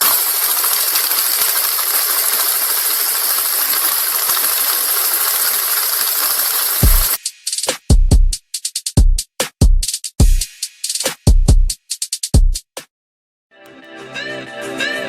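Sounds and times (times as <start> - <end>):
static hiss with crackling: 0.0 - 7.2.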